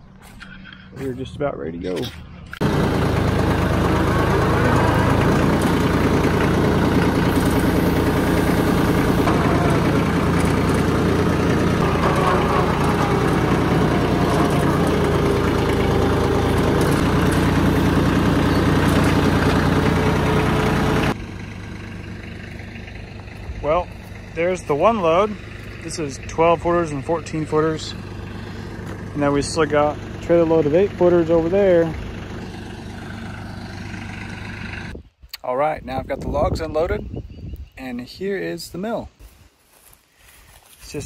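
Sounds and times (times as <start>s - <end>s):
vehicle engine running: 0.0s - 35.0s.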